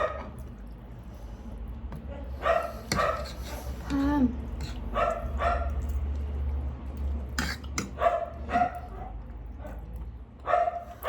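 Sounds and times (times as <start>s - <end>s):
dog barking: 0.0s - 0.4s, 2.1s - 3.4s, 4.9s - 5.8s, 7.9s - 11.0s.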